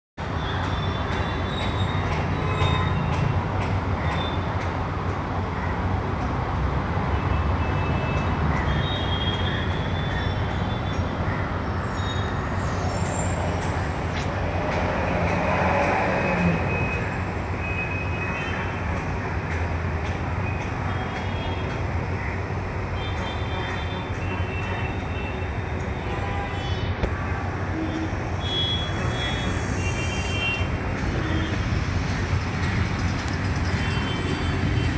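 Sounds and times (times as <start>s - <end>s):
urban machinery rumble: 0.2s - 34.9s.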